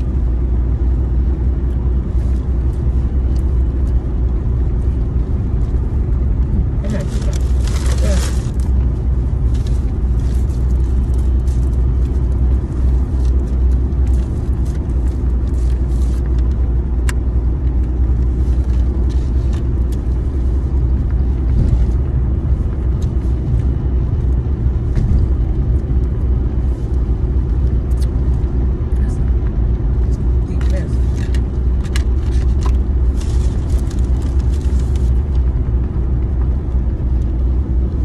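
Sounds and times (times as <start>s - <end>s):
car engine and road noise: 0.0s - 38.0s.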